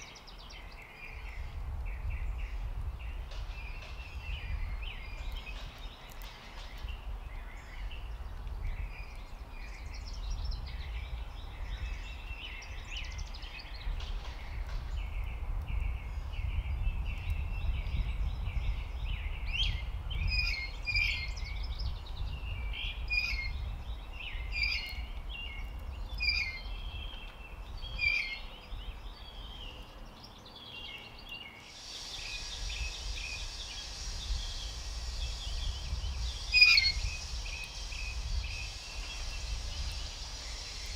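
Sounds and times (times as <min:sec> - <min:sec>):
songbirds chirping: 0:00.0 - 0:40.9
steady high hiss: 0:31.3 - 0:40.9.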